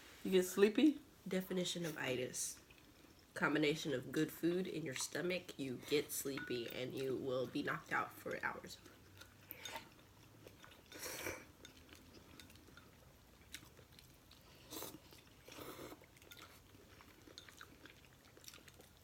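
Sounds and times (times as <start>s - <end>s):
mouth and bowl sounds: 1.4s - 19.0s
person chewing noodles: 2.6s - 3.3s, 8.8s - 19.0s.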